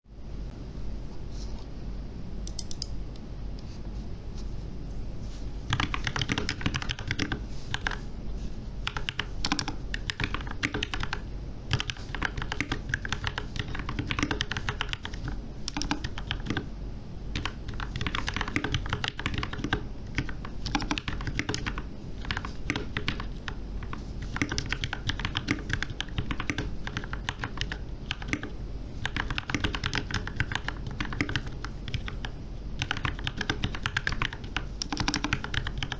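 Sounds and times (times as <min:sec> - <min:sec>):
low background hum: 0:00.0 - 0:35.9
typing on mechanical keyboard: 0:05.7 - 0:08.0, 0:08.8 - 0:16.7, 0:17.4 - 0:35.9.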